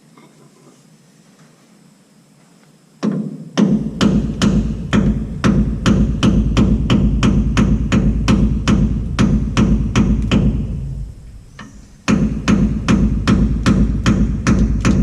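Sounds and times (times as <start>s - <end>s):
hammer blows: 3.0s - 15.0s.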